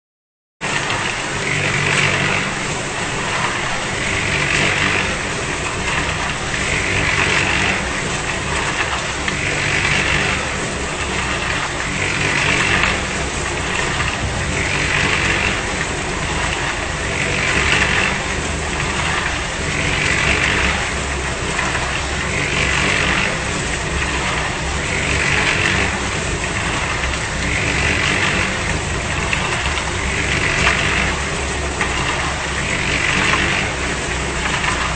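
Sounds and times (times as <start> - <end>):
concrete mixer running: 0.6 - 34.9
motor hum: 0.6 - 34.9.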